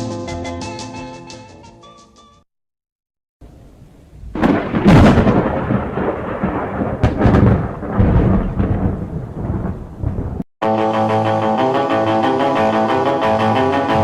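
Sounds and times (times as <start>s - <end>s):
deep rumbling thunder: 4.2s - 10.4s
sharp thunder cracks: 4.2s - 10.4s
song: 10.6s - 14.0s.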